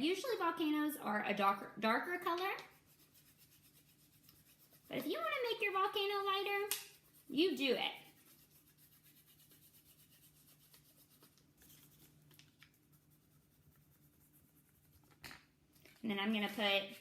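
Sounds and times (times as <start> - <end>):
coloring scratching on paper: 2.0 - 15.2.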